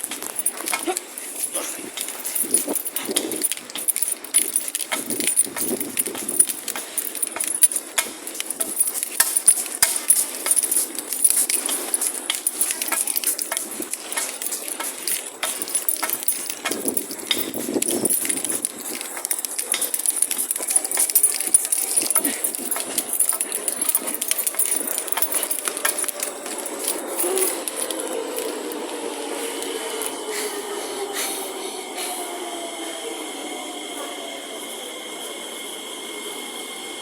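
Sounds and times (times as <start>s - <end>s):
carried things rattling: 0.0s - 30.2s
person breathing hard: 30.2s - 32.3s.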